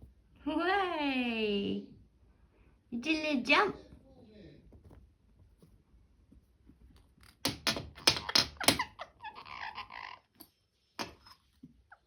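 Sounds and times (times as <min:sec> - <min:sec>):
parrot raspy grumbling chatter: 0:08.8 - 0:10.4.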